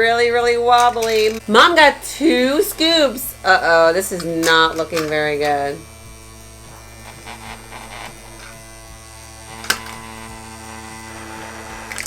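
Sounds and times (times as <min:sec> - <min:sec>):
small electric motor humming: 0:00.0 - 0:12.0
plastic clicks: 0:00.7 - 0:05.8, 0:09.5 - 0:10.2.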